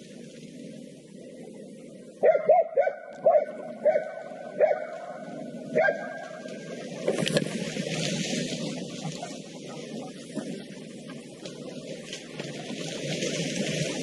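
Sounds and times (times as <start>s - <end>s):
dog barking sharply: 2.2s - 5.0s.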